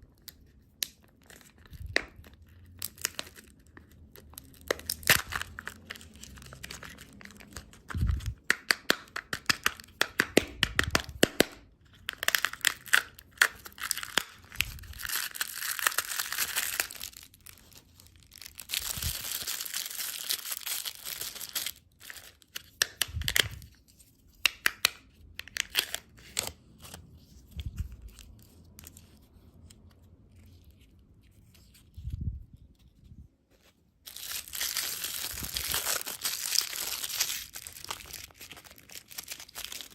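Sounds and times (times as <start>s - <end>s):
plastic wrappers crinkling: 1.0s - 8.5s, 12.0s - 22.6s, 34.0s - 39.9s
packaging tearing: 2.6s - 8.4s, 12.1s - 23.7s, 34.1s - 39.9s.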